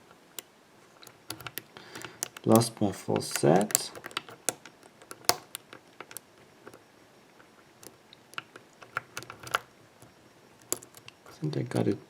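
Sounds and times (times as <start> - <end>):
lock pick clicking in padlock: 0.4 - 6.8, 7.8 - 11.3.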